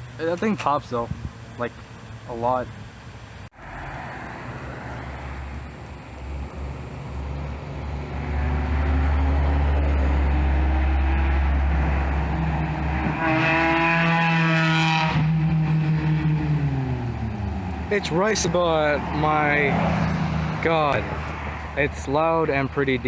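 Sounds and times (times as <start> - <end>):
car engine accelerating: 3.6 - 21.8.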